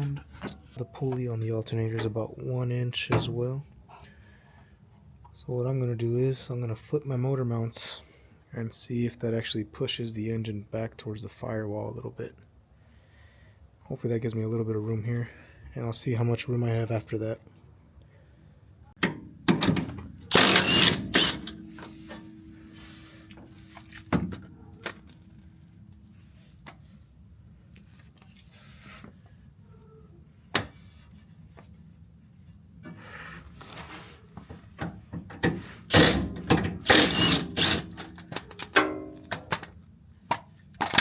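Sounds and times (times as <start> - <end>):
metal clanks and knocks: 21.0 - 25.7, 34.8 - 39.6.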